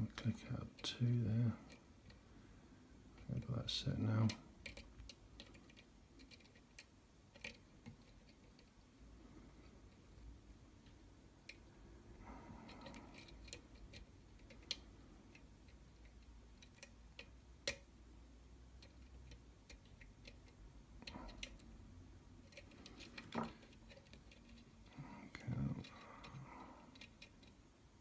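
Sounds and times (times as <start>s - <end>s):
lock pick clicking and scraping: 4.3s - 8.8s, 12.6s - 17.9s, 18.8s - 21.8s, 22.4s - 27.6s.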